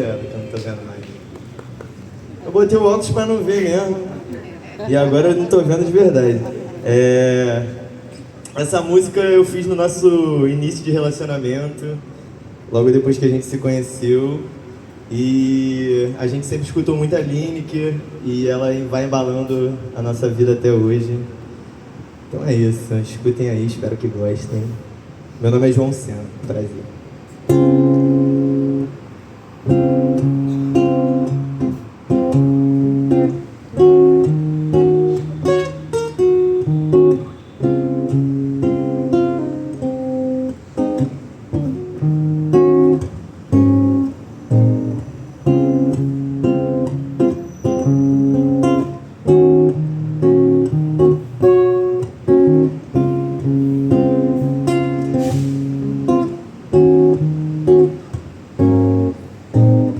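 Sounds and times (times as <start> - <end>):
acoustic guitar strumming: 27.3 - 59.9.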